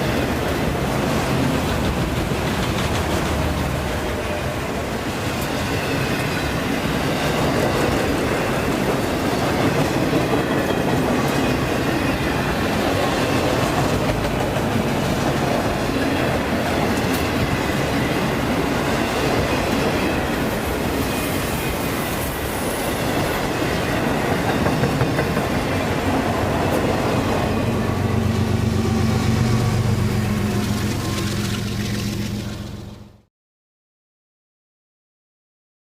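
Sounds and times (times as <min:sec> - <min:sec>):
train wheels clattering on rails: 0:00.0 - 0:29.0
low engine drone: 0:27.6 - 0:33.3.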